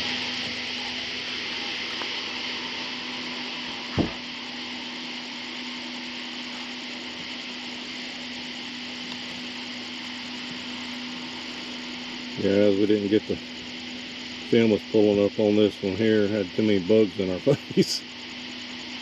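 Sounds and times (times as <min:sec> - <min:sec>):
small boat motor running: 0:00.0 - 0:19.0
short knock: 0:03.9 - 0:04.2.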